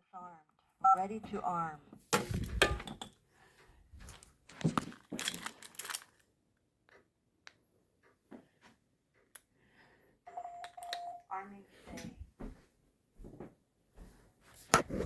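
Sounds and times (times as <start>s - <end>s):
rustling and crackling: 2.2s - 6.2s.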